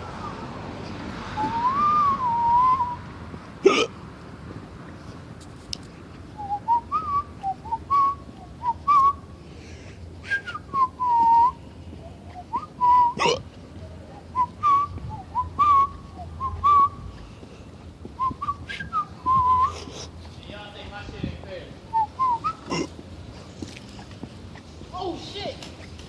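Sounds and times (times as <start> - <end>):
person whistling a tune: 1.4 - 3.0, 6.4 - 9.2, 10.2 - 11.6, 12.4 - 13.2, 14.4 - 17.0, 18.2 - 19.9
hiccup: 3.6 - 4.0, 13.1 - 13.5, 22.5 - 23.0.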